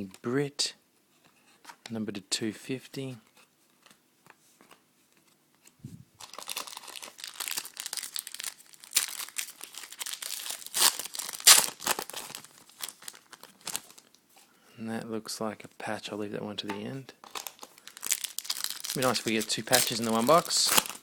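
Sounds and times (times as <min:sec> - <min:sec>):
card pack wrapper tearing and crinkling: 0:06.2 - 0:14.1, 0:17.2 - 0:21.0.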